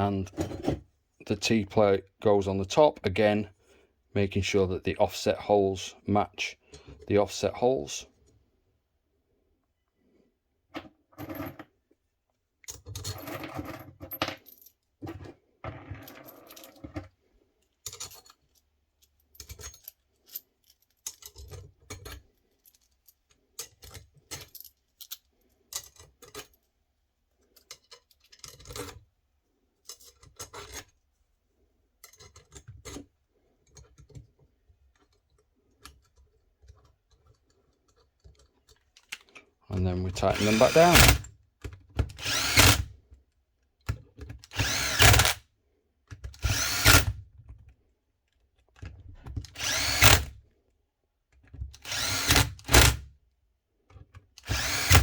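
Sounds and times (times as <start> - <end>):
small metal parts clinking: 17.8 - 26.6.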